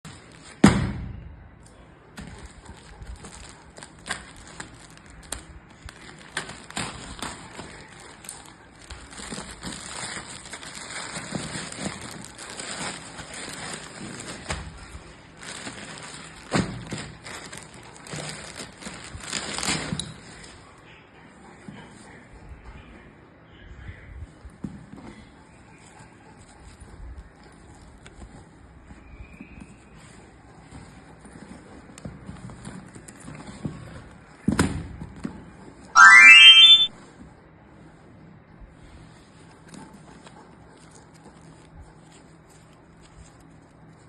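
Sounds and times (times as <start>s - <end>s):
packaging rustling and crinkling: 2.2s - 20.6s.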